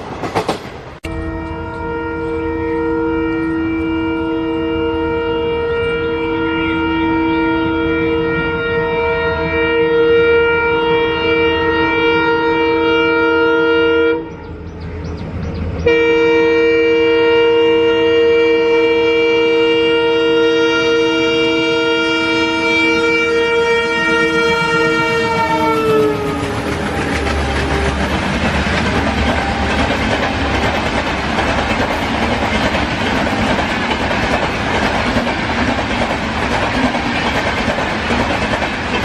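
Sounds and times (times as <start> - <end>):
rumble of train wheels: 0.0 - 11.6, 14.2 - 39.0
train horn: 1.0 - 14.6, 15.8 - 31.8.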